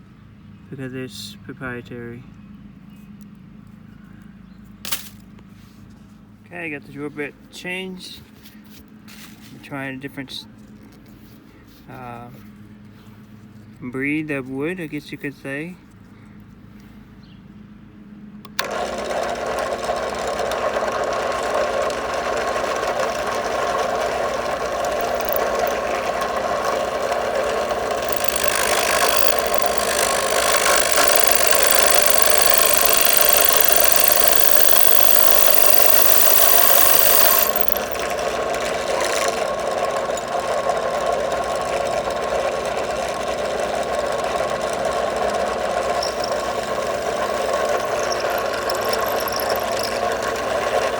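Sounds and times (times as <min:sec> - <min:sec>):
electric drill running: 0:18.6 - 0:40.5, 0:44.2 - 0:50.9
drill bit cutting wood: 0:22.5 - 0:38.4, 0:45.9 - 0:50.9.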